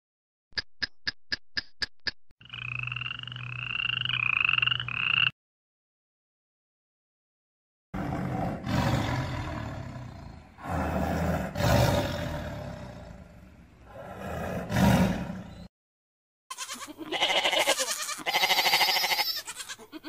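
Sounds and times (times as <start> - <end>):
big cat roaring: 8.0 - 15.7.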